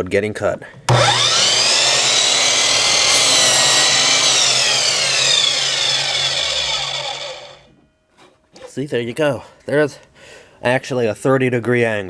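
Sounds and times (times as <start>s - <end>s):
mitre saw cutting board: 0.9s - 7.7s.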